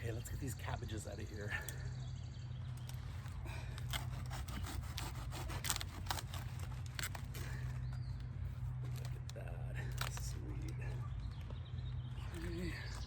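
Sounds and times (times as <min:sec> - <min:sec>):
leaves crackling and tearing: 0:02.9 - 0:07.7, 0:08.7 - 0:10.9.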